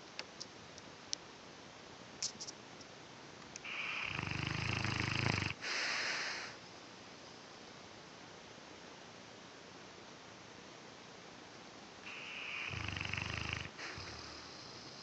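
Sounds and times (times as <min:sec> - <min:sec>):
dog snoring: 0:03.6 - 0:06.6, 0:12.0 - 0:15.0
breathy hiss of air: 0:03.6 - 0:07.4, 0:12.0 - 0:15.0.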